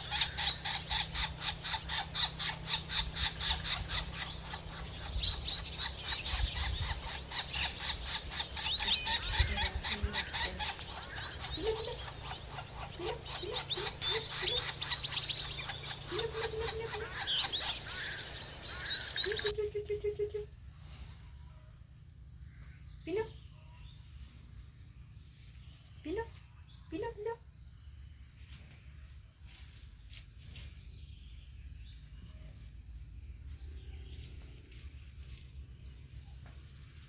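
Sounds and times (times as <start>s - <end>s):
chickens calling: 0.0s - 20.3s
high twittering chirps: 0.0s - 20.4s.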